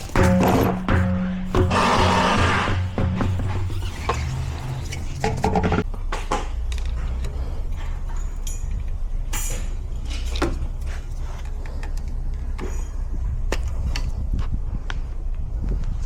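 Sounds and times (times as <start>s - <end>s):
brakes squealing: 1.7s - 5.6s.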